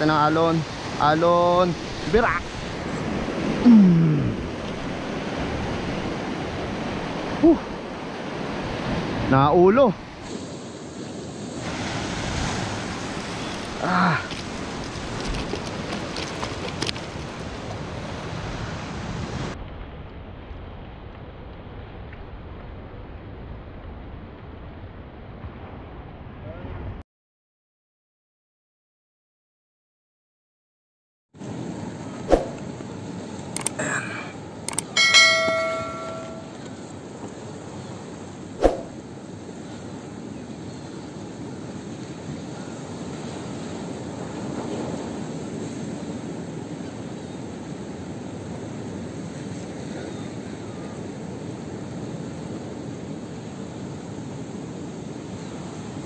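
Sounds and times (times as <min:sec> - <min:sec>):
surf washing against rocks: 0:00.0 - 0:19.6
steady background noise: 0:31.4 - 0:40.6
clicks: 0:34.7 - 0:36.2
metal struck ringing: 0:35.0 - 0:36.6.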